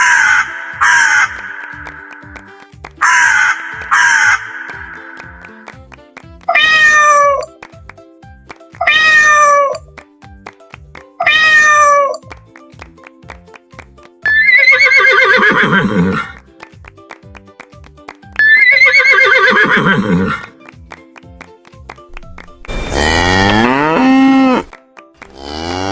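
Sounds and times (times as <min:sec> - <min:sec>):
background music with steady beat: 0:00.0 - 0:09.0, 0:09.8 - 0:11.5, 0:12.2 - 0:25.9
cat meows: 0:06.5 - 0:07.5, 0:08.8 - 0:09.8, 0:11.2 - 0:12.2
horse whinnies: 0:06.5 - 0:07.5, 0:14.3 - 0:16.4, 0:18.4 - 0:20.5, 0:22.7 - 0:24.7.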